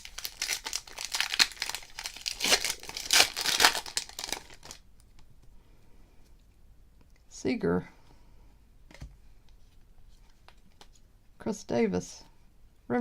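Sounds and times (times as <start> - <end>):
foil wrapper tearing and crinkling: 0.0 - 4.8.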